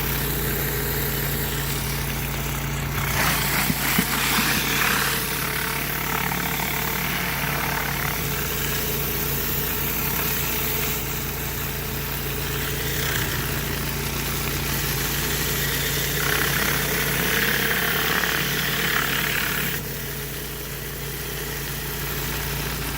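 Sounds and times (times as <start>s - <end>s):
water jet hissing: 0.0s - 11.2s
pressure washer engine running: 0.0s - 22.9s.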